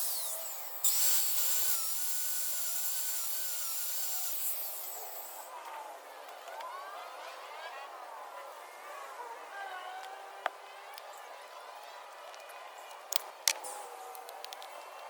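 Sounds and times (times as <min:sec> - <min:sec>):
cut-off saw cutting concrete: 0:00.0 - 0:05.5.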